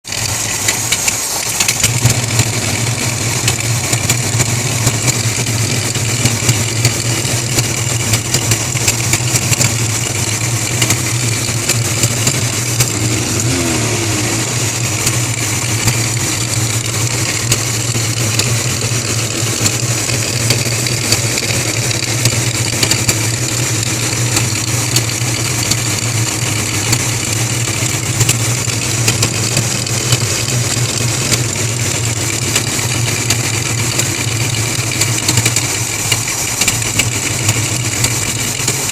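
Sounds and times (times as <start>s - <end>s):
car engine idling: 0.1s - 38.9s
rapid valvetrain ticking: 0.1s - 38.9s.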